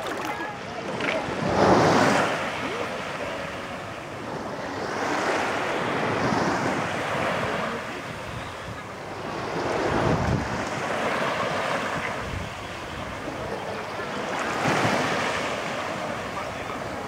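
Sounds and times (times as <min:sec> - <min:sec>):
surf washing onto beach: 0:00.0 - 0:17.0
wind buffeting microphone: 0:05.9 - 0:13.7.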